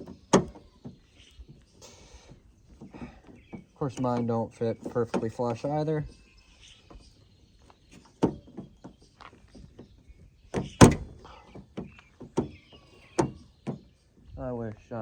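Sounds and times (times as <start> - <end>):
door handle knocks and clicks: 10.5 - 11.2
thump: 10.6 - 11.2.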